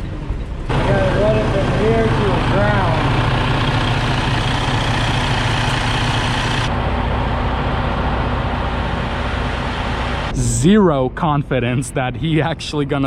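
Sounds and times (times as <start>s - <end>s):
diesel truck engine idling: 0.6s - 10.8s.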